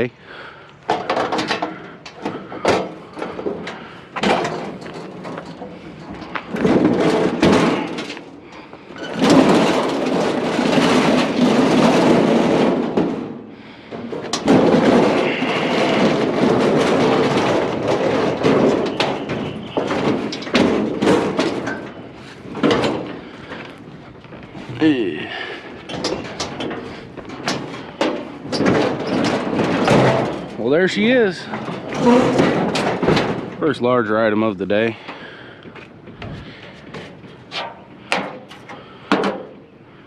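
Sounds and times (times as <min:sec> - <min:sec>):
rough dragging noise: 0:13.8 - 0:32.9
metal griddle clanking: 0:14.0 - 0:23.7.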